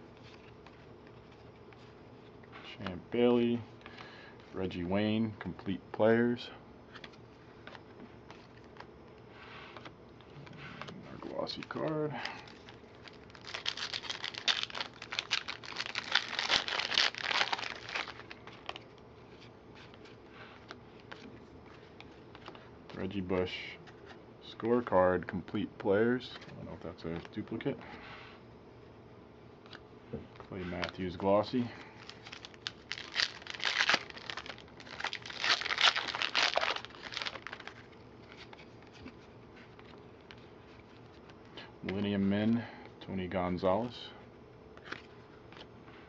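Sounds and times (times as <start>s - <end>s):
wrapper tearing and crinkling: 12.4s - 18.8s, 32.0s - 38.5s.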